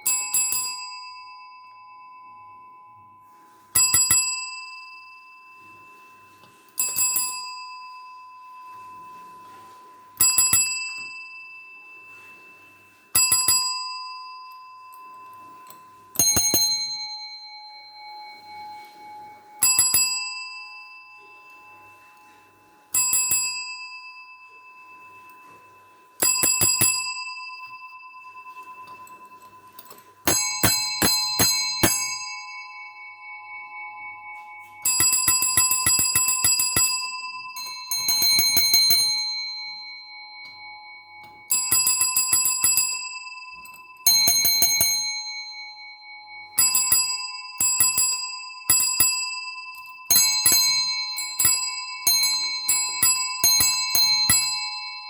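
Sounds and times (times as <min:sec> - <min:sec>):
small bell ringing in rapid bursts: 0:00.0 - 0:55.0.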